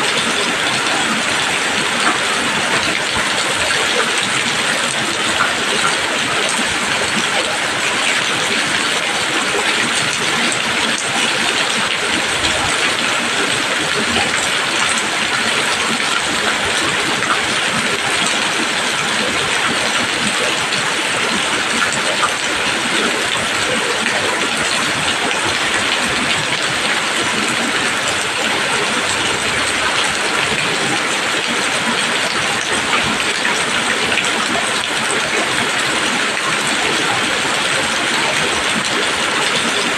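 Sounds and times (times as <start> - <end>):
rain pattering on leaves: 0.0 - 39.9.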